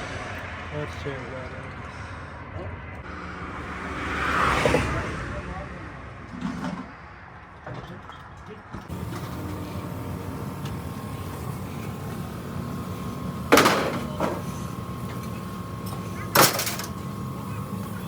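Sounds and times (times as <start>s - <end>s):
heavy truck running: 3.0s - 7.4s, 8.8s - 18.0s.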